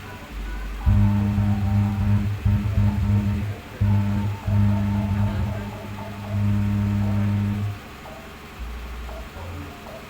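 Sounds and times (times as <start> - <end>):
loud deep bass line: 0.8 - 7.8
music through sound system: 0.8 - 7.8.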